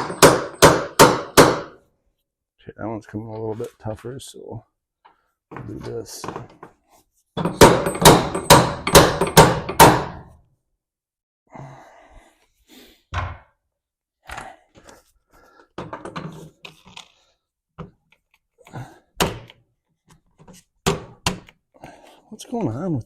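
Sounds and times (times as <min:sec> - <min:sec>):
hammer striking metal part: 0:00.0 - 0:01.8, 0:07.4 - 0:10.3
knocks and clunks: 0:07.4 - 0:10.3.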